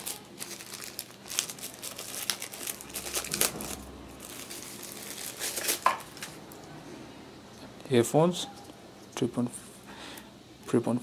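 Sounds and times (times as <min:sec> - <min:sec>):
plastic packaging crinkling: 0:00.0 - 0:06.4.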